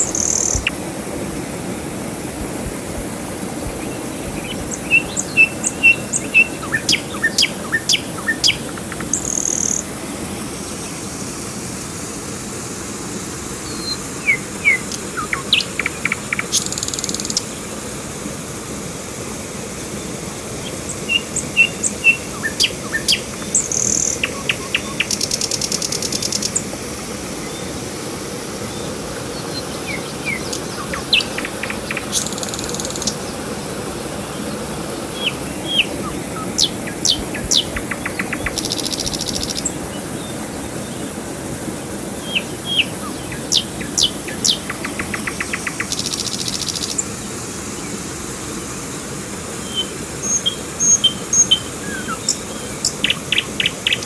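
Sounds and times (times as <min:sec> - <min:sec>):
buzzy bird trill: 0:00.0 - 0:00.7, 0:03.8 - 0:09.9, 0:13.6 - 0:17.5, 0:20.6 - 0:26.7, 0:29.4 - 0:33.3, 0:35.2 - 0:40.4, 0:42.2 - 0:47.1, 0:49.6 - 0:54.0
river water rushing: 0:00.0 - 0:54.0
songbirds chirping: 0:03.4 - 0:09.9, 0:13.7 - 0:17.6, 0:20.0 - 0:26.7, 0:28.6 - 0:33.6, 0:34.3 - 0:47.0, 0:49.7 - 0:54.0.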